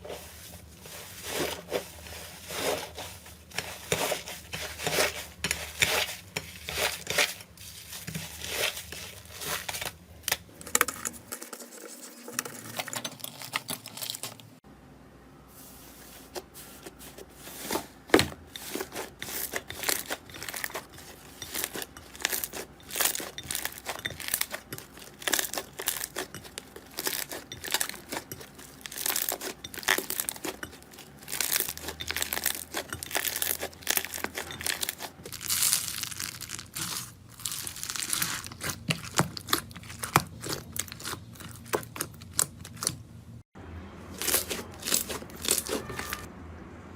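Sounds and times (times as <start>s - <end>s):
slime crackling and popping: 21.5s - 43.0s, 44.2s - 46.3s.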